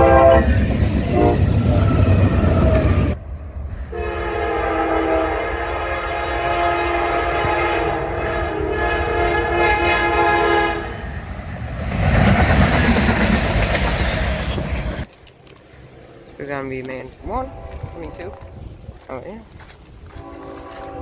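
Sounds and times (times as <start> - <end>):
locomotive air horn chord: 0.0 - 3.2, 3.9 - 11.1, 20.1 - 21.0
loud rushing rumble: 10.8 - 15.1.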